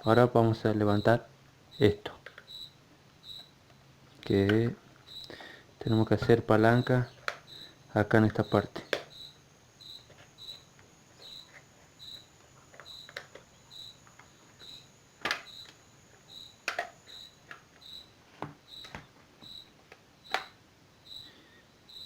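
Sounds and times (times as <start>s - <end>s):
faint high chirp: 0.9s - 3.5s, 5.0s - 6.1s, 8.4s - 21.3s
plastic casing clicks and snaps: 7.2s - 7.5s, 8.8s - 9.2s, 12.7s - 13.5s, 15.2s - 15.8s, 16.6s - 17.7s, 19.9s - 20.6s.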